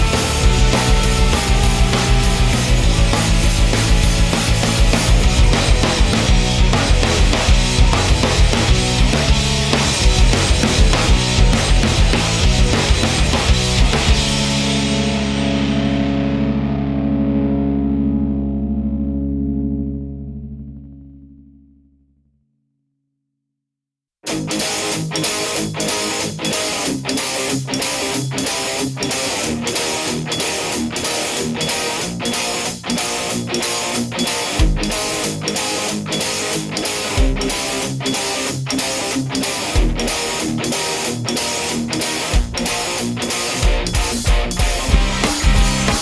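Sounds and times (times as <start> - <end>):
heavy low drum hits: 0.0 - 15.9, 43.8 - 46.0
strummed electric guitar: 0.0 - 21.6, 24.2 - 46.0.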